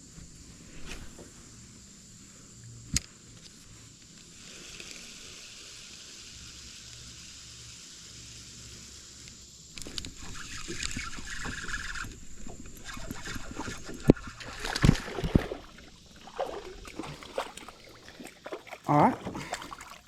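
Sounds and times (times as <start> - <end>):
creek water splashing: 10.2 - 20.0
sharp splashes or knocks: 14.4 - 20.0.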